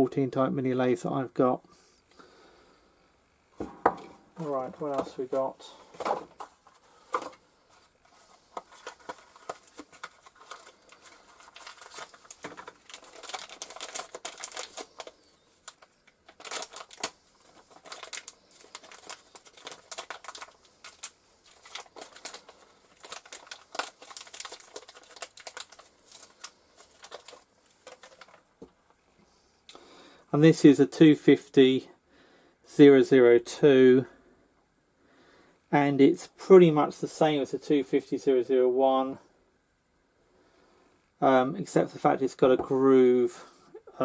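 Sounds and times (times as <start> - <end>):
packaging crinkling: 6.4 - 28.7.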